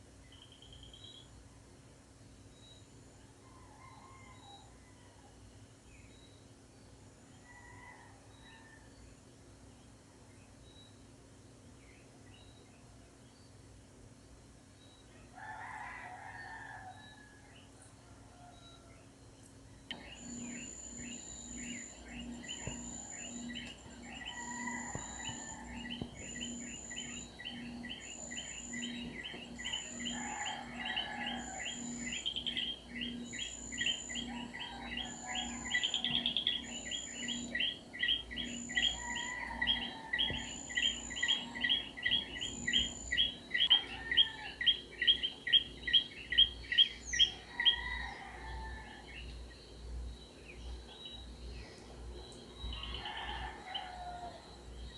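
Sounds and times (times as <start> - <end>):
thin high pulsing tone: 19.9 - 46.6
animal chirps: 19.9 - 47.4.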